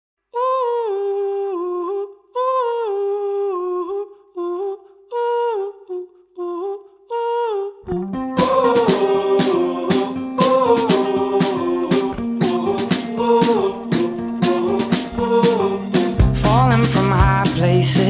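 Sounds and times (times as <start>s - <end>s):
wordless hummed melody: 7.9s - 17.4s
band with guitar: 7.9s - 18.0s.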